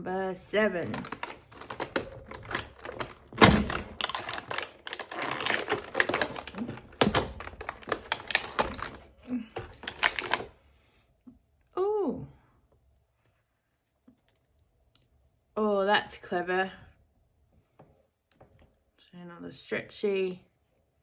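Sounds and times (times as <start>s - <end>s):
cardboard door clicking and crackling: 0.8s - 10.5s.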